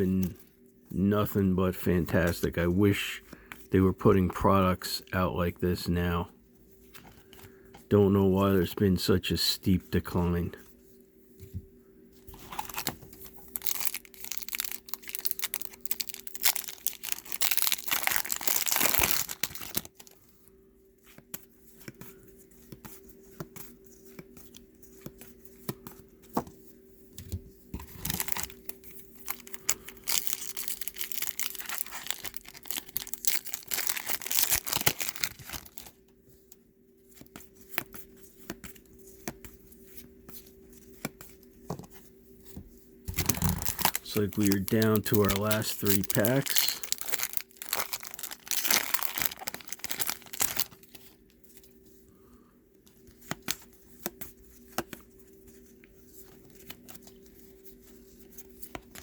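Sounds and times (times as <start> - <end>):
cards rustling: 12.3 - 20.4, 27.8 - 36.0, 37.1 - 51.8
wrappers tearing and crinkling: 12.5 - 20.2, 27.8 - 36.0, 43.1 - 51.2.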